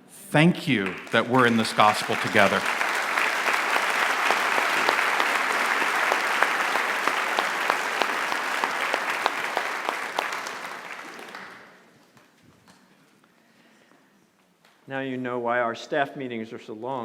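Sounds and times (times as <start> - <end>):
audience applauding: 0.7 - 11.9.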